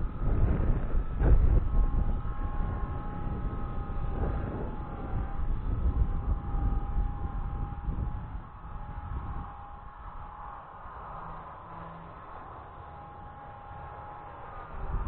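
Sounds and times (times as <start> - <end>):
rc helicopter motor whine: 0.0 - 15.0
wind buffeting microphone: 0.0 - 15.0.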